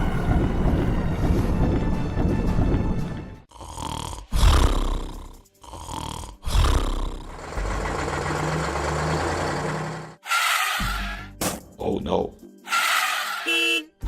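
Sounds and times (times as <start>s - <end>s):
deep animal roars: 3.6s - 9.3s.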